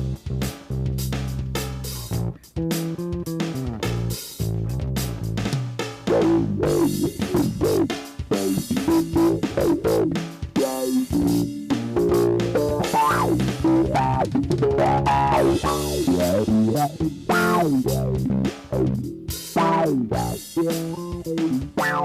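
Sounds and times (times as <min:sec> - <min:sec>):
bass guitar: 0:00.0 - 0:22.0
drum kit beat: 0:00.0 - 0:22.0
electric guitar: 0:06.1 - 0:22.0.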